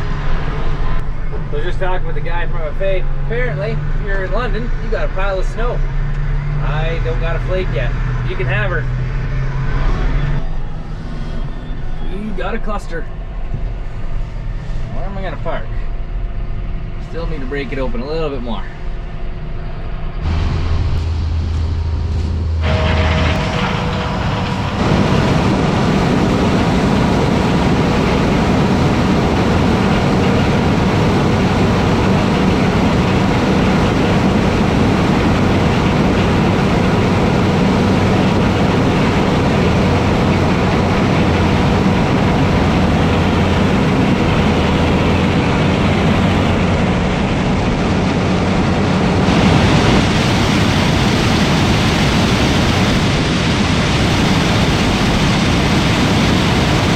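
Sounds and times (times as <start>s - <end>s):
heavy farm machinery engine: 0.0s - 56.9s.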